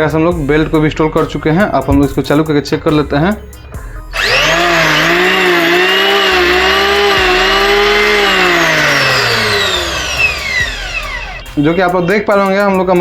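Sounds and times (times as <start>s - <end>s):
electric hand planer whining: 4.2s - 11.6s.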